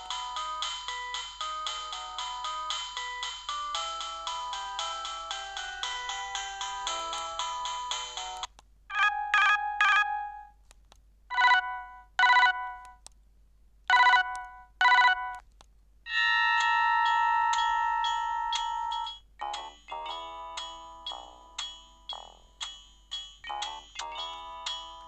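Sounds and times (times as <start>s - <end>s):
mobile phone ringtones: 1.6s - 10.5s, 11.3s - 13.0s, 13.9s - 15.4s, 16.1s - 21.0s.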